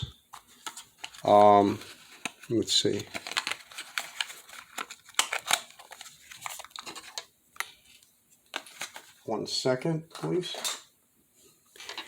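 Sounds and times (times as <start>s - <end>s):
packaging clicking and crinkling: 0.3s - 9.2s.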